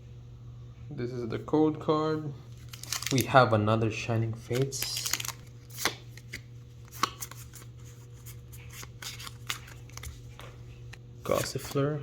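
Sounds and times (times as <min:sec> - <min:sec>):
cards rustling: 0:02.5 - 0:03.4, 0:04.2 - 0:11.9.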